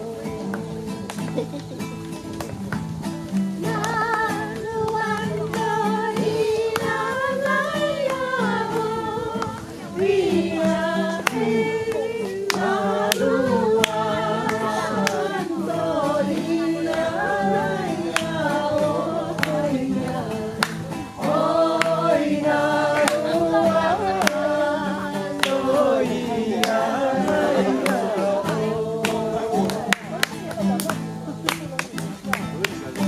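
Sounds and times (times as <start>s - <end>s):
group of people singing: 3.5s - 31.8s.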